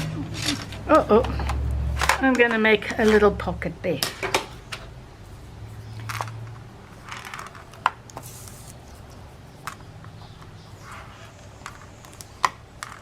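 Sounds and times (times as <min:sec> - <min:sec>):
paper rustling: 0:07.0 - 0:09.2.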